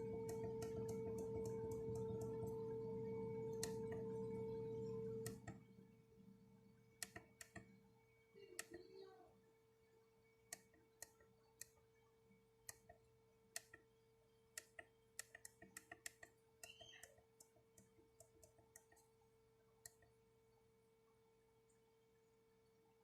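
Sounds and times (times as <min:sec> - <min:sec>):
push-buttons clicking: 0:00.0 - 0:02.8, 0:03.4 - 0:05.6, 0:07.0 - 0:07.7, 0:14.6 - 0:19.0
faint electrical hum: 0:00.0 - 0:23.0.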